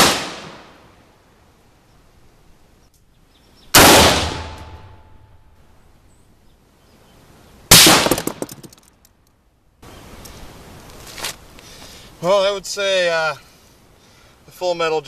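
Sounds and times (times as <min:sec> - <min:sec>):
rifle shots: 0:00.0 - 0:00.7, 0:03.8 - 0:05.0, 0:07.7 - 0:08.7.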